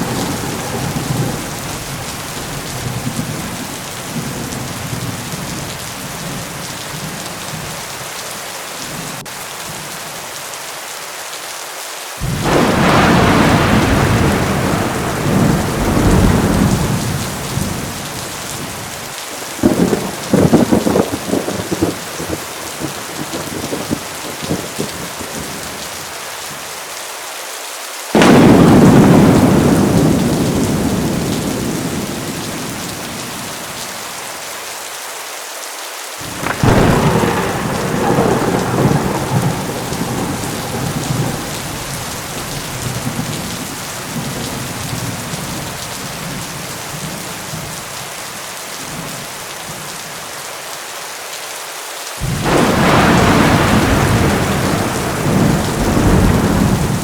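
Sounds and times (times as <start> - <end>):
thunder claps: 0.0 - 6.4, 12.2 - 18.9, 19.6 - 25.6, 28.2 - 33.8, 36.2 - 47.1, 52.2 - 57.0
heavy rain falling: 0.0 - 57.0.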